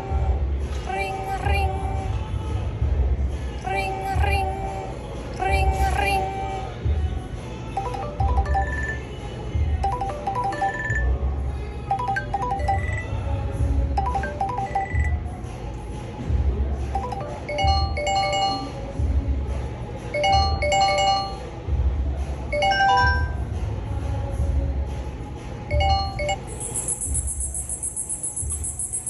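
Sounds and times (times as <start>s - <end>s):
electronic ringtone melody: 7.8s - 9.2s, 9.8s - 11.2s, 11.9s - 13.2s, 14.0s - 15.2s, 17.0s - 18.8s, 20.2s - 21.5s, 22.5s - 23.4s, 25.7s - 29.0s.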